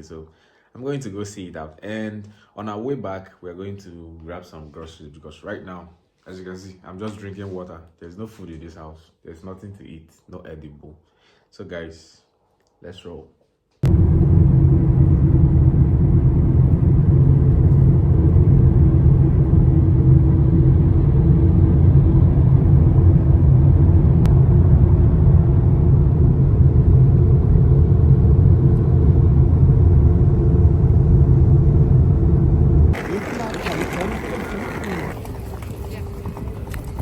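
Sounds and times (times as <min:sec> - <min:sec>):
faint hum tones: 0:13.8 - 0:37.0
vehicle engine rumble: 0:13.8 - 0:37.0.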